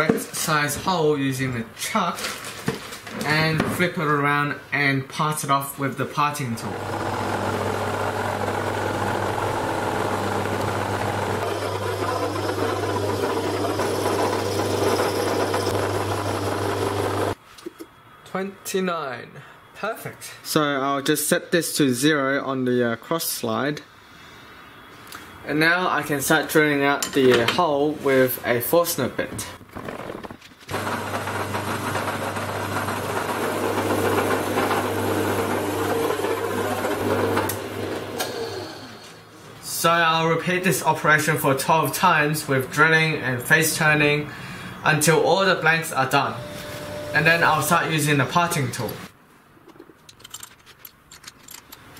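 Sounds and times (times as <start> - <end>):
cutting tool turning wood: 6.6 - 17.4
lathe motor humming: 6.6 - 17.4, 30.7 - 39.0, 46.2 - 47.7.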